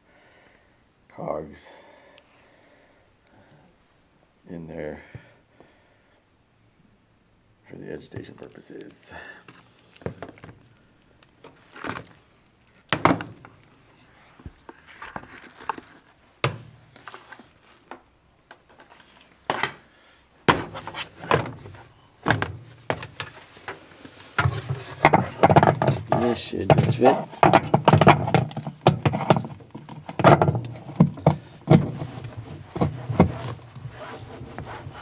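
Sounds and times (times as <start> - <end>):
hollow plastic knocks and clunks: 12.9 - 13.5, 16.4 - 16.7, 20.5 - 23.4, 24.4 - 35.0.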